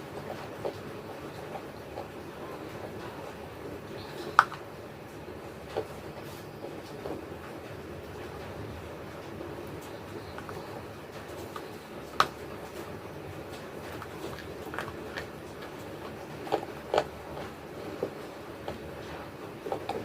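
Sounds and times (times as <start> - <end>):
dry clay being chewed: 0.0 - 7.6, 9.2 - 20.0.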